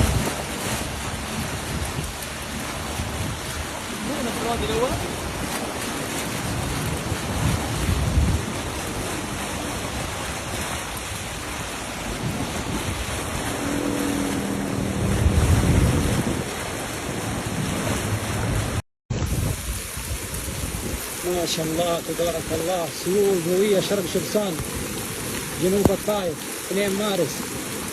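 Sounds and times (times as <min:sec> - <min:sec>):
wind buffeting microphone: 0:00.0 - 0:26.3
floodwater rushing: 0:00.0 - 0:27.9.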